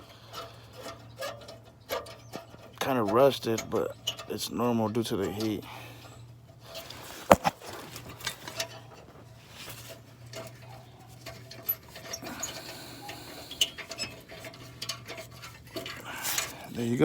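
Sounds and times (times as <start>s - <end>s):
metal tools clinking: 9.6s - 17.0s.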